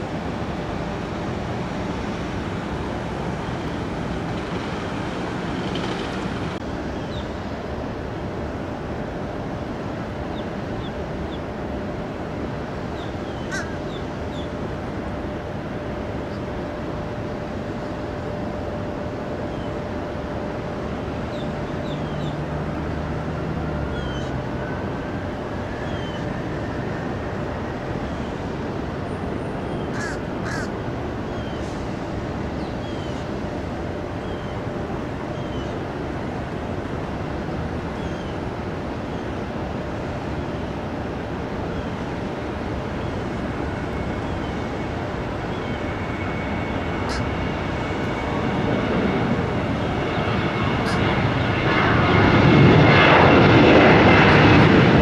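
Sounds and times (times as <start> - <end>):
outdoor background rush: 0.0 - 55.0
birds calling: 12.9 - 14.6, 23.9 - 24.3, 25.8 - 26.3, 29.7 - 31.7, 35.3 - 35.8, 46.9 - 47.4, 50.8 - 51.1.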